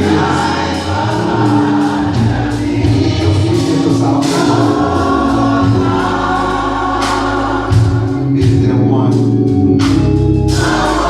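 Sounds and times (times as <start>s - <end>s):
gospel choir singing: 0.0s - 11.0s
instrumental accompaniment: 0.0s - 11.0s.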